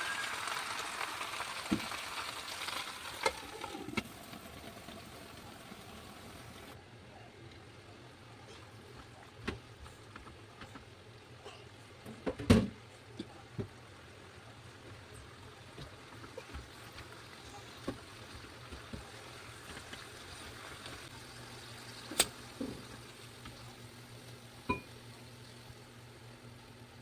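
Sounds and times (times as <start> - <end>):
food hissing in a pan: 0.0 - 6.7.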